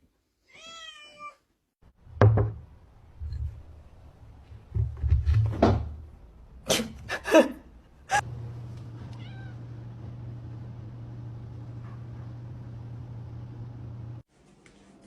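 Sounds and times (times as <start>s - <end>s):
cat meowing: 0.5s - 1.5s, 9.1s - 9.6s.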